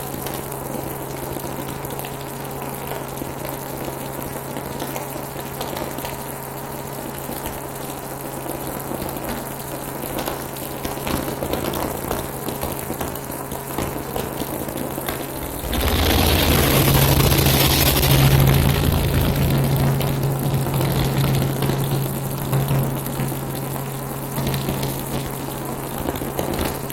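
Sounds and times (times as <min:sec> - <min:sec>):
loud rushing noise: 0:15.2 - 0:24.1
helicopter drone: 0:15.2 - 0:25.6.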